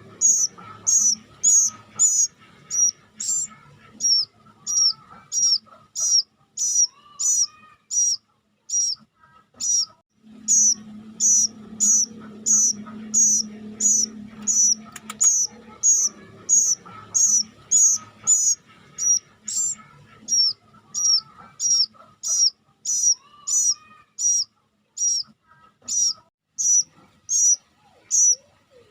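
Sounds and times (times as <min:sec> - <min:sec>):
bird chick begging calls: 0:00.1 - 0:09.0, 0:09.6 - 0:28.5
low hum: 0:10.1 - 0:19.4.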